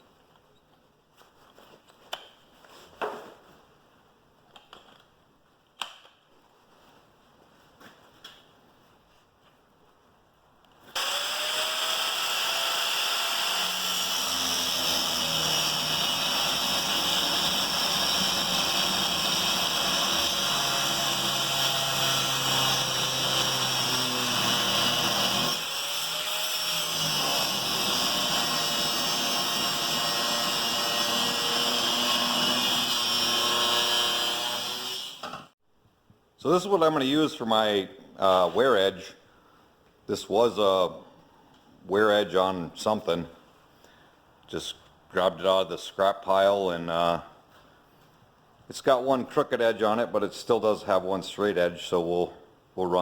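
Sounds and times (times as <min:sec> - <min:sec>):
angle grinder cutting steel: 0:11.0 - 0:35.4.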